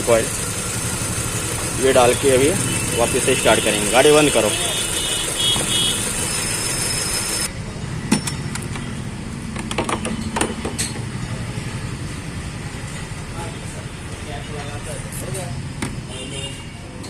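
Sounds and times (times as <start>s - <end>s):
car engine misfiring: 0.0s - 13.4s
sharp clicks and knocks: 9.5s - 11.1s.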